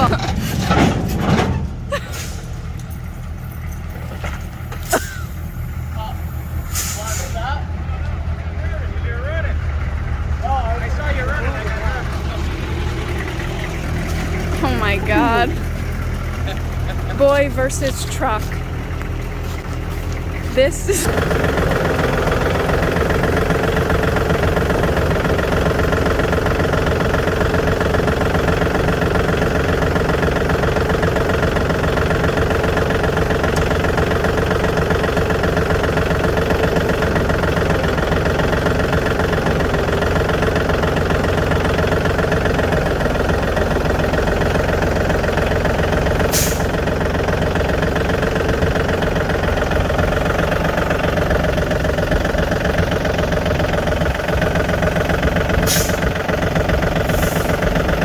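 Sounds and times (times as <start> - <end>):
diesel truck engine running: 0.0 - 58.0.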